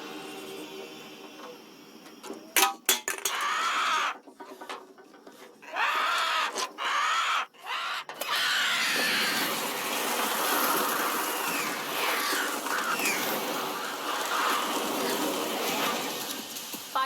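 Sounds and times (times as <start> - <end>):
crows cawing harshly: 3.1 - 4.2, 5.6 - 15.2.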